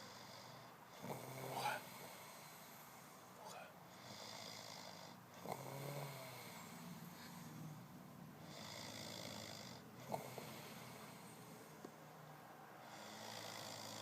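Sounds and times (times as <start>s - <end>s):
man snoring: 0.0s - 2.8s, 3.4s - 7.6s, 8.4s - 11.4s, 12.8s - 14.0s.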